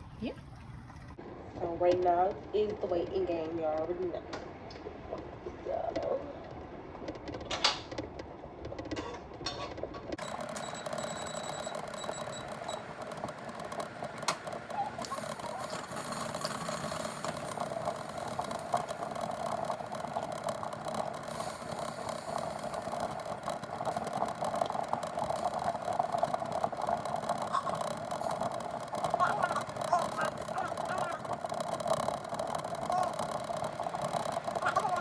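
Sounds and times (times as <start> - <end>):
pots boiling: 1.1 - 35.0
short high electronic beeps: 10.2 - 12.8.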